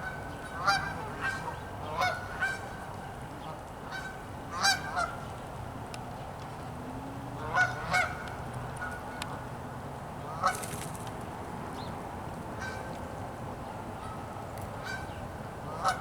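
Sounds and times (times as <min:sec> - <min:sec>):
geese honking: 0:00.1 - 0:02.7, 0:07.4 - 0:08.2, 0:15.7 - 0:16.0.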